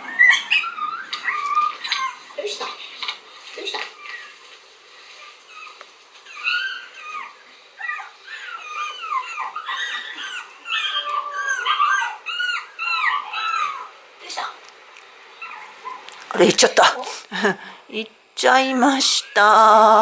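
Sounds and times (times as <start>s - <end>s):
dog whining: 0.0s - 2.6s, 3.6s - 4.5s, 5.2s - 14.0s, 15.4s - 16.1s.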